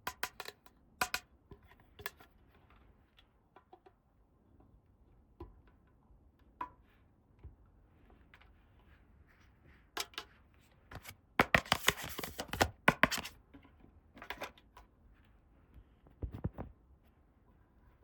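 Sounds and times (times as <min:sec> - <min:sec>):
plastic pieces clicking and tapping: 0:10.9 - 0:13.4
packaging crinkling: 0:11.0 - 0:13.3.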